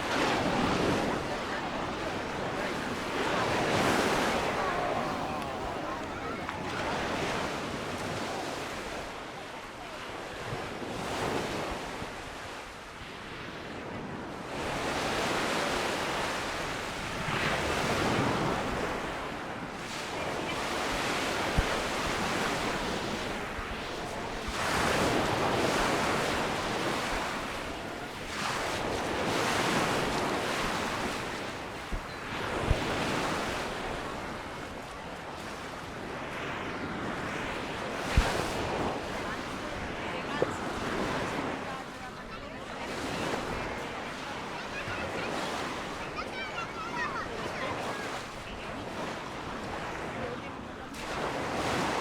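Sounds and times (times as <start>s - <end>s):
sea waves breaking on shore: 0.0s - 52.0s
wind on microphone: 13.7s - 41.8s.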